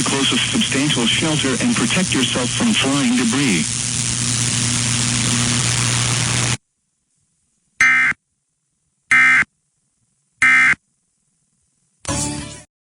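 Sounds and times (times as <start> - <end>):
buzzy data bursts: 0.0 - 6.6
radio static with hum: 0.0 - 6.6.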